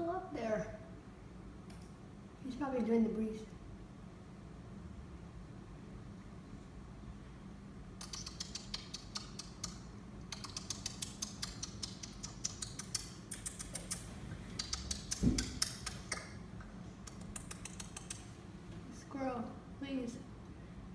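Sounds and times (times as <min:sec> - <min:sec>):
light clicking and tapping: 0:17.1 - 0:18.3.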